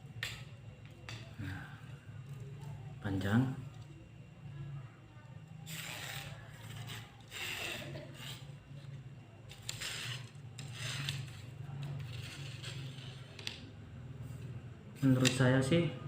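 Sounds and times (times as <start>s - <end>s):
fishing rod sections rubbing: 5.6s - 8.9s, 9.5s - 13.7s.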